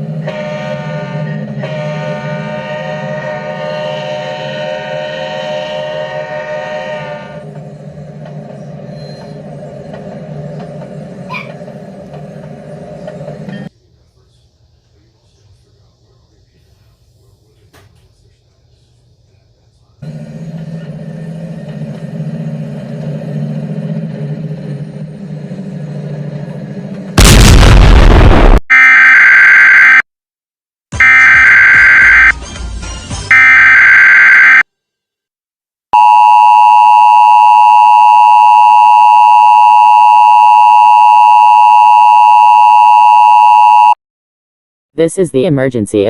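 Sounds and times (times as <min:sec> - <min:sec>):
heavy vehicle rumbling: 0:07.4 - 0:13.7, 0:20.0 - 0:27.7
electronic two-tone alert signal: 0:31.0 - 0:32.3, 0:33.3 - 0:34.6, 0:36.0 - 0:44.0.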